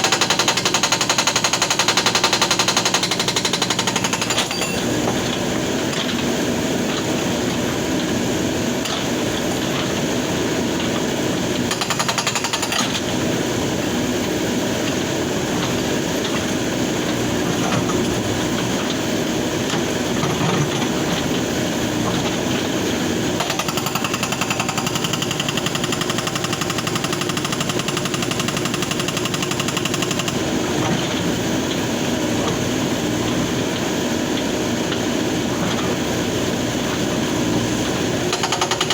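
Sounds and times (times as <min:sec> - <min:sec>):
hydraulic breaker hammering rock: 0:00.0 - 0:05.5, 0:11.6 - 0:13.2, 0:23.3 - 0:31.2, 0:37.9 - 0:38.9.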